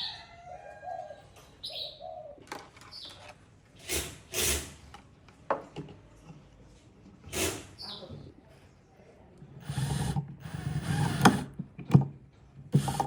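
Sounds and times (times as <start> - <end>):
short loud hissing bursts: 7.3 - 7.8
small birds chirping: 7.8 - 8.2.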